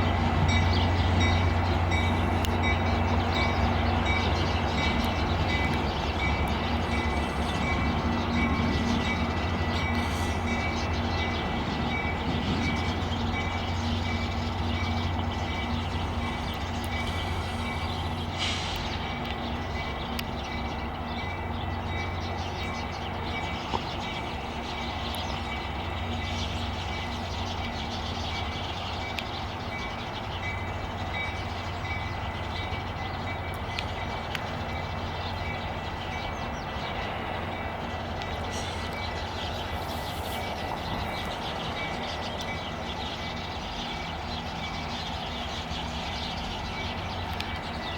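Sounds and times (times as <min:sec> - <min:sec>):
diesel locomotive engine rumble: 0:00.0 - 0:47.9
rail and wheel noise: 0:00.0 - 0:47.9
train bell ringing: 0:00.4 - 0:18.4.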